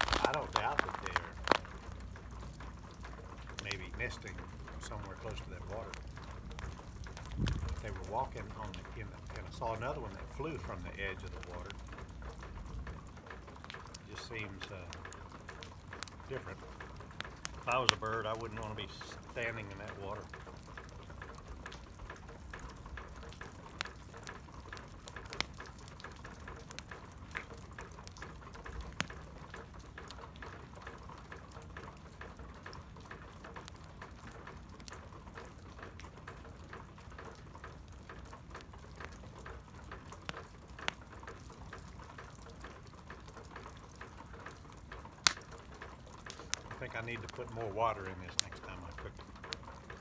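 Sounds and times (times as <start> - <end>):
campfire crackling: 0.0 - 50.0
fire popping: 0.0 - 50.0.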